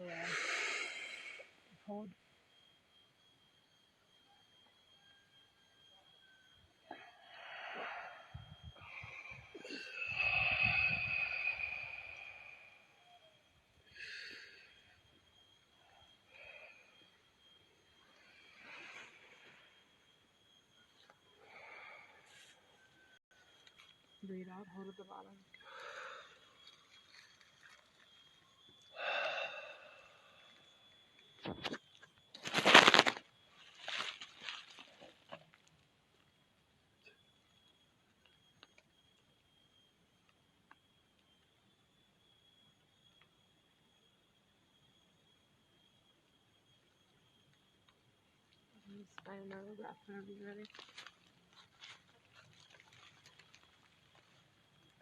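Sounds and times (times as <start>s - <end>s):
heavy wheezy breathing: 0.2s - 1.6s, 7.0s - 12.9s, 29.0s - 30.4s
crackling rustling noise: 26.4s - 28.9s, 30.6s - 35.9s, 47.8s - 55.0s.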